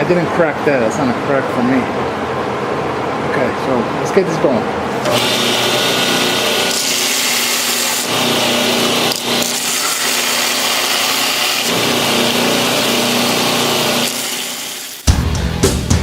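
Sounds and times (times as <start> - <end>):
grinder motor hum: 4.9 - 15.0.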